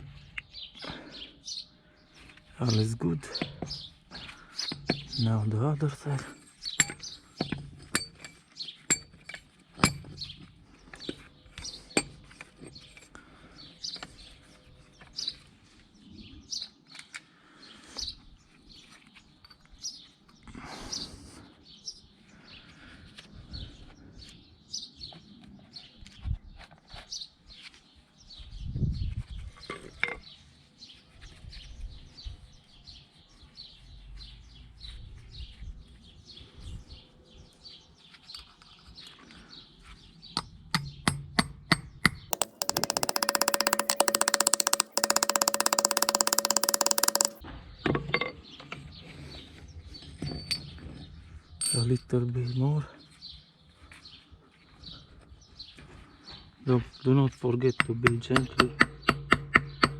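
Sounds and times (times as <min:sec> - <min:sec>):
light metallic tapping: 0:42.4 - 0:47.4.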